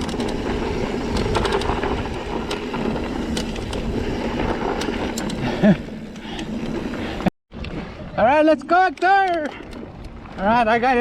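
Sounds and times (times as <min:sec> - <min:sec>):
bike clicks and rattles: 0:00.0 - 0:07.3, 0:08.9 - 0:10.2
bike tyres on dirt: 0:00.0 - 0:07.3.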